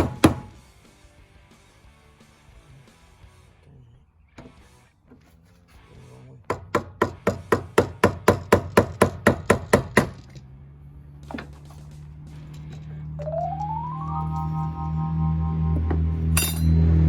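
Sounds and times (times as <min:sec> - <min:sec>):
hammer striking a screwdriver: 0:00.0 - 0:00.6, 0:06.5 - 0:10.3.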